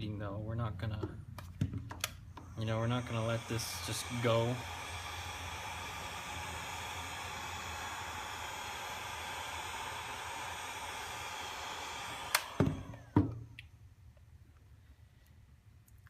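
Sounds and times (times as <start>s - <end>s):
heat gun blowing: 2.2s - 13.6s.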